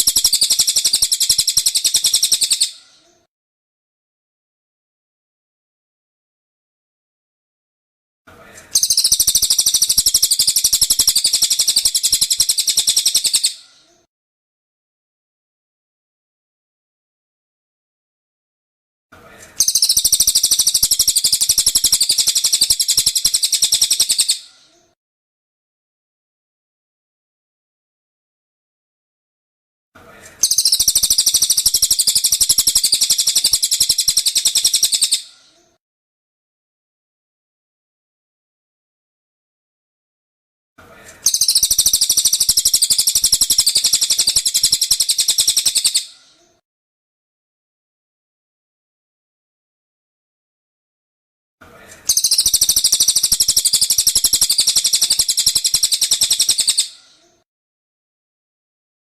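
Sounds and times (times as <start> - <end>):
songbird high-pitched trill: 0.0 - 2.7, 41.3 - 46.1, 52.1 - 57.0
songbird trilling: 0.0 - 2.7, 8.8 - 13.6, 19.6 - 24.4, 30.4 - 35.2, 41.3 - 46.1, 52.1 - 57.0.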